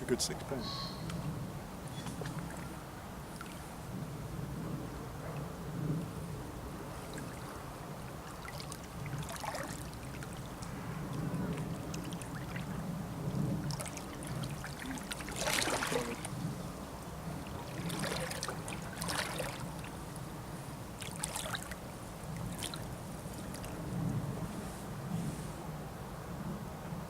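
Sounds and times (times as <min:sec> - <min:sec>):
river rushing: 0:06.6 - 0:23.8.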